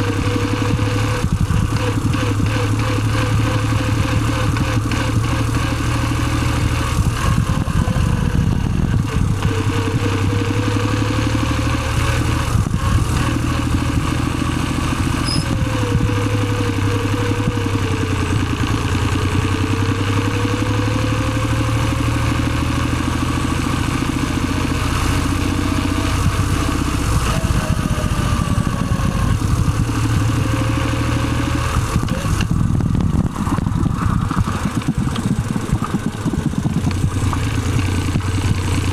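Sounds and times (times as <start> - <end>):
car engine running: 0.0 - 38.9
gearbox whine: 11.5 - 18.1.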